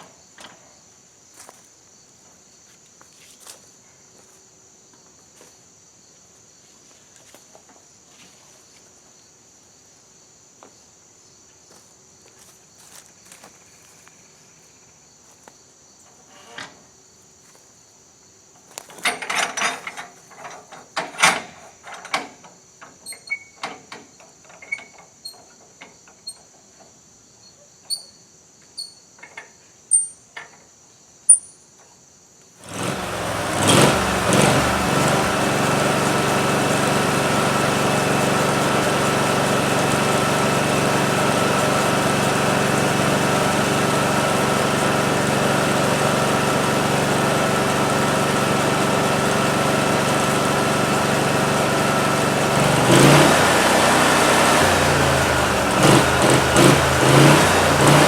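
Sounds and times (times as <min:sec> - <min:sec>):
crickets chirping: 0:00.0 - 0:32.7
engine starting and idling: 0:18.9 - 0:25.4, 0:32.6 - 0:58.0.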